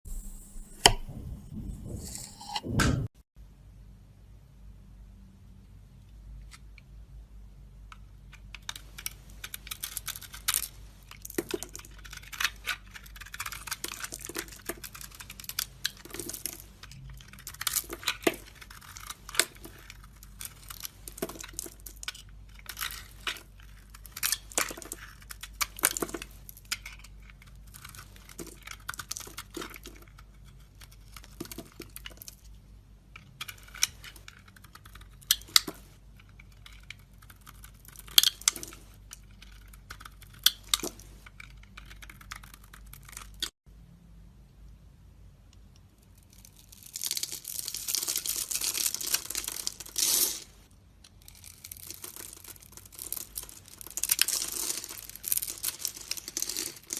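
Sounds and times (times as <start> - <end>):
blade cutting soap: 0.1 - 3.1.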